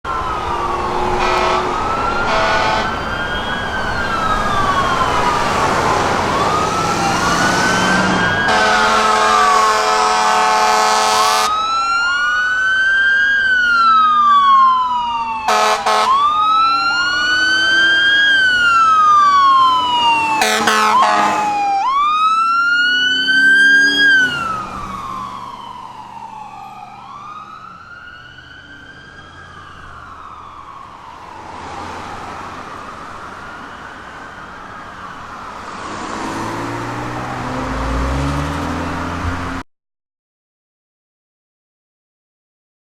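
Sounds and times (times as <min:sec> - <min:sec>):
sirens wailing: 0:00.0 - 0:39.6
vehicle engine: 0:00.1 - 0:11.4, 0:16.9 - 0:39.6
vehicle horn blasts: 0:01.2 - 0:03.0, 0:08.5 - 0:11.5, 0:15.5 - 0:16.2, 0:20.4 - 0:21.4.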